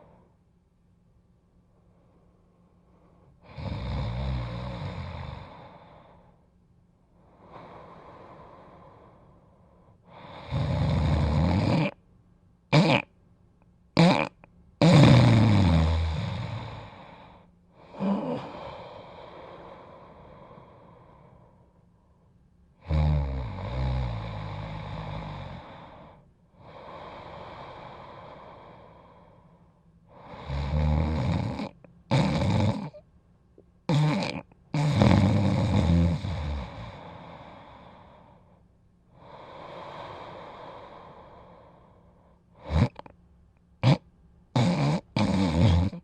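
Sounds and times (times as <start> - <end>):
person snoring: 3.4 - 6.2, 10.1 - 12.0, 12.7 - 13.1, 14.0 - 21.5, 22.8 - 29.4, 30.1 - 33.0, 33.9 - 38.5, 42.6 - 43.1, 43.8 - 44.0, 44.6 - 46.0.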